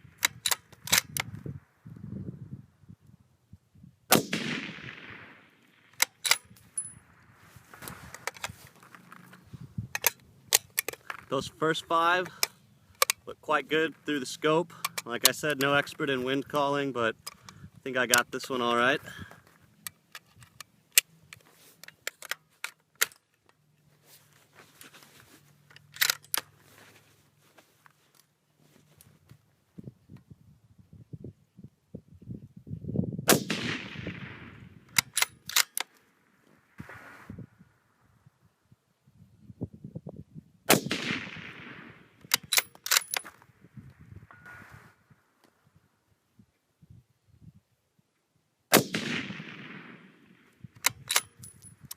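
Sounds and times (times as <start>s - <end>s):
rifle bolt clicking and clattering: 0.2s - 1.4s, 5.9s - 7.0s, 7.8s - 11.3s, 12.2s - 13.2s, 14.6s - 18.3s, 19.8s - 23.6s, 25.6s - 26.6s, 34.9s - 36.0s, 42.2s - 43.4s, 50.8s - 51.9s
rifle shot with echo: 4.1s - 6.4s, 33.3s - 34.8s, 40.7s - 43.1s, 48.7s - 51.3s.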